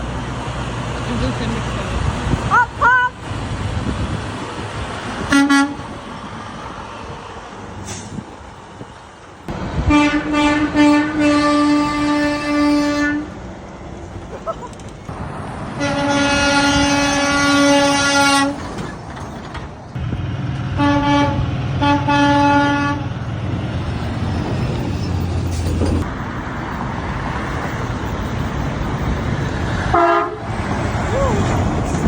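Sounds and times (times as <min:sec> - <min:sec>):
diesel truck engine passing: 0:00.0 - 0:32.0
truck air horn blasts: 0:05.3 - 0:05.9, 0:09.9 - 0:13.3, 0:15.8 - 0:18.6, 0:20.7 - 0:23.1, 0:29.9 - 0:30.5.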